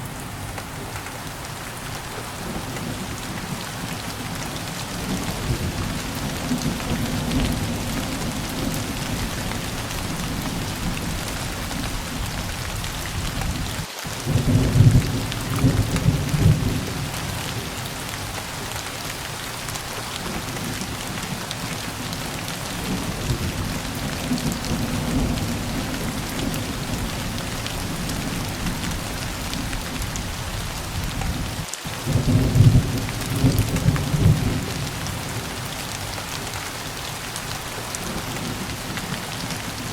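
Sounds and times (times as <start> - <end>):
heavy rain hissing: 0.0 - 39.9
rolling thunder: 2.0 - 39.9.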